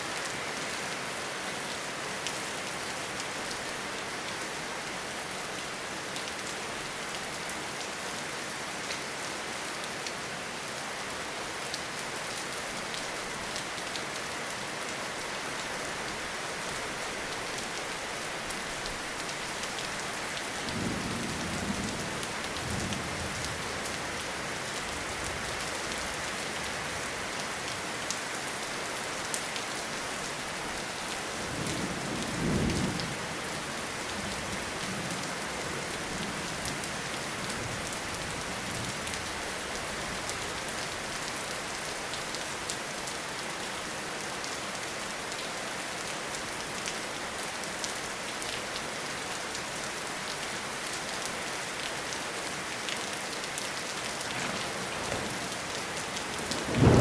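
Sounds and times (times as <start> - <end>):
rain pattering in forest: 0.0 - 57.0
distant thunder rumbling: 54.2 - 57.0.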